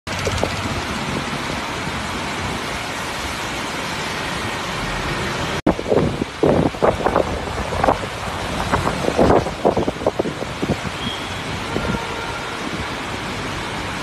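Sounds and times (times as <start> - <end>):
heavy rain falling: 0.1 - 14.0
wind buffeting microphone: 5.7 - 13.0.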